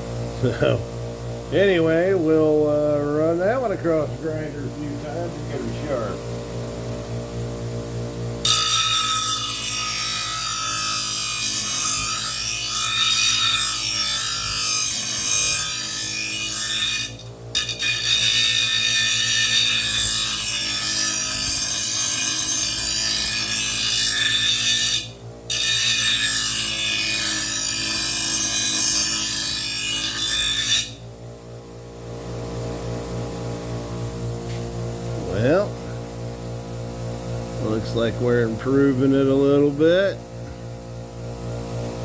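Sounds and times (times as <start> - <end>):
grinder motor humming: 0.0 - 30.1
blade grinding on stone wheel: 8.4 - 31.1.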